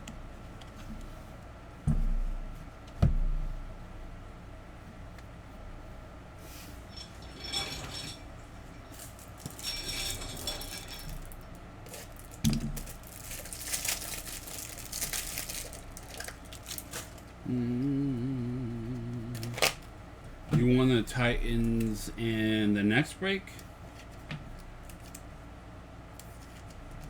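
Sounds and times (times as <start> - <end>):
trading cards and wrappers crinkling: 9.0 - 17.3, 19.3 - 19.8
person humming or speaking: 17.4 - 19.8, 20.6 - 23.0.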